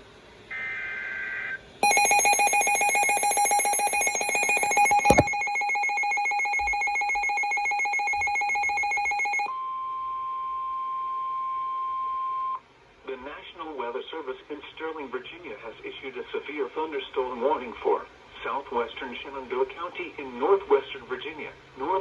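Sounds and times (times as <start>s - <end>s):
pulsing buzzy alarm beep: 1.8s - 9.5s
steady warning alarm tone: 1.8s - 9.5s.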